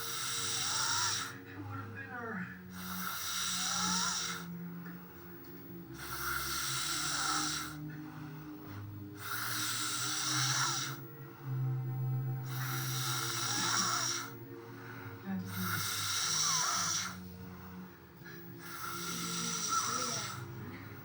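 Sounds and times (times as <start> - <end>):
person snoring with whistle: 0.0 - 1.4, 2.7 - 4.5, 6.0 - 7.8, 9.2 - 11.0, 12.4 - 14.4, 15.5 - 17.2, 18.6 - 20.5.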